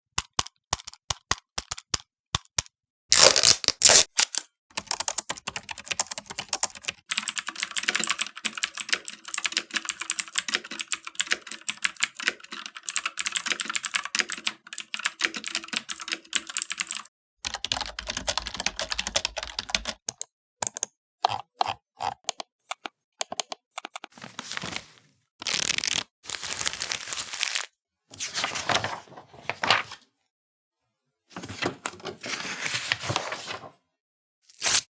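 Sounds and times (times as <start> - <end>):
computer keyboard typing: 4.8 - 21.4, 22.3 - 24.1.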